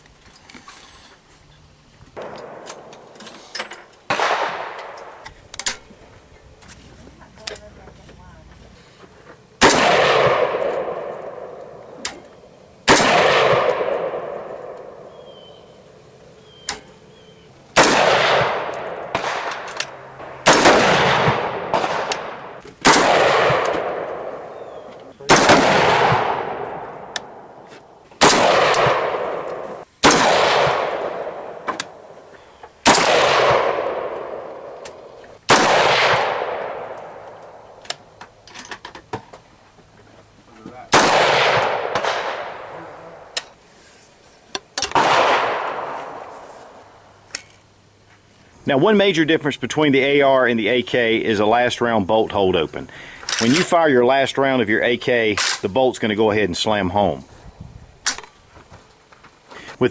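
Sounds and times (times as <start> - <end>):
rifle shots with rolling echo: 2.2 - 3.2, 3.8 - 6.0, 9.5 - 38.4, 40.9 - 43.6, 44.9 - 47.3.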